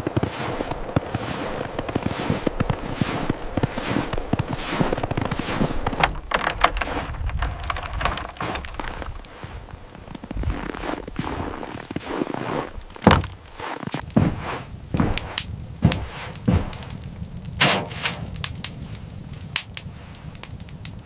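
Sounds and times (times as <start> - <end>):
knocks and thuds: 5.9 - 9.0, 13.0 - 13.4, 14.1 - 17.0.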